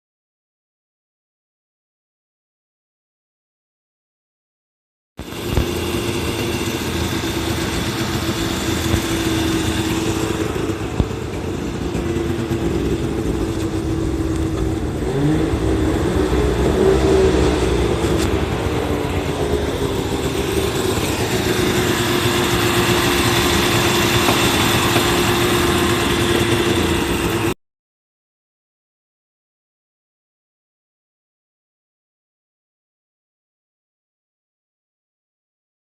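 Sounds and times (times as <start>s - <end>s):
car engine running: 5.2s - 27.6s.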